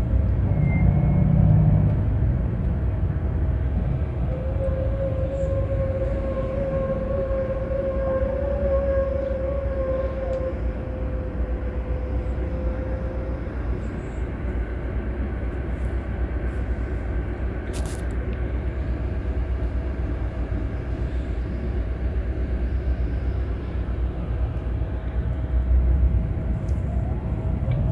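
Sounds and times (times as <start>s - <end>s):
bus diesel engine running: 0.0s - 4.6s, 10.0s - 27.9s
whining tone: 3.8s - 14.2s.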